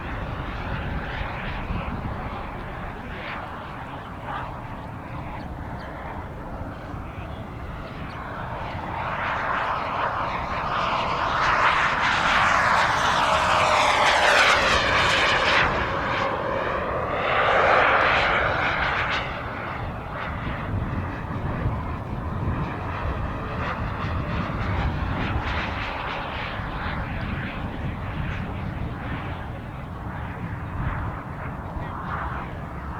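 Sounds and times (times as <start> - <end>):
model jet engine whooshing: 8.5 - 26.3.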